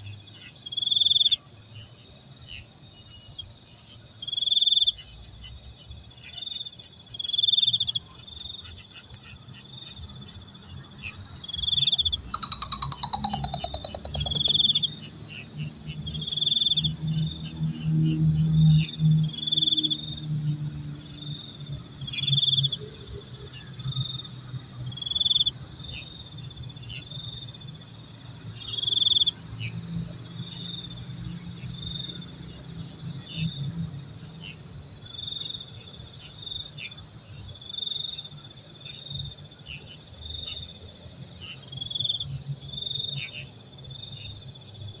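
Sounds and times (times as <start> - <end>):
crickets and insects chirping: 0.0 - 45.0
loud high chirp: 12.4 - 14.8
rapid pulsing falling in pitch: 12.4 - 14.8.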